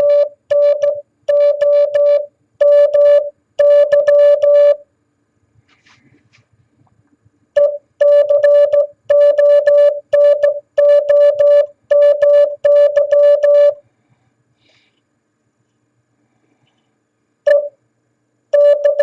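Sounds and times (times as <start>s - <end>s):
morse code beeps: 0.0s - 4.8s, 7.6s - 13.8s, 17.5s - 17.8s, 18.6s - 19.0s.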